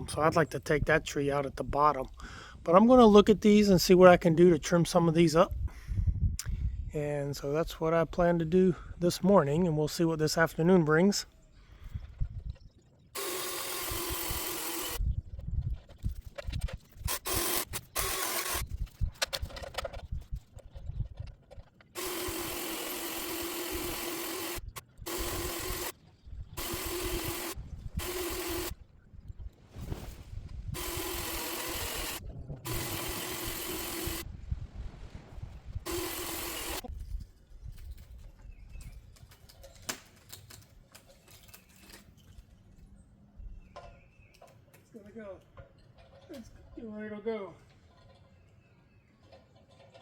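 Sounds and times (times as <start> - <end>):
power saw cutting tree limb: 13.2 - 15.0, 17.0 - 18.7, 21.9 - 26.0, 26.6 - 28.8, 30.7 - 34.3, 35.8 - 36.9.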